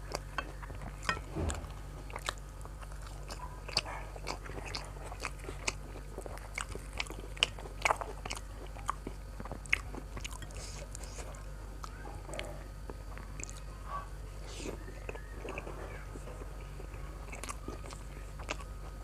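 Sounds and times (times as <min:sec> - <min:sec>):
person chewing crispy food: 0:00.0 - 0:19.0
low hum: 0:00.3 - 0:04.1.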